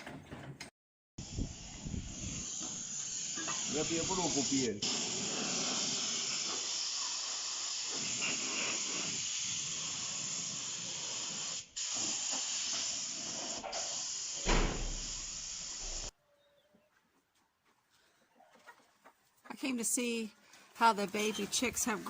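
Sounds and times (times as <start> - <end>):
pressure washer spraying water: 1.2 - 16.1.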